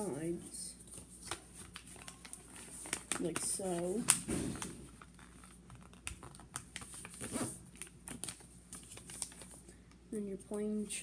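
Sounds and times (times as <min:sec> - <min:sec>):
paper crinkling: 0:00.8 - 0:09.7.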